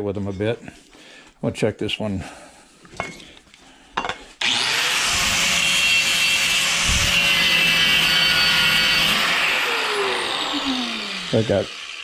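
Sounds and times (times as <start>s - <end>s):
power tool grinding metal: 4.4s - 12.0s.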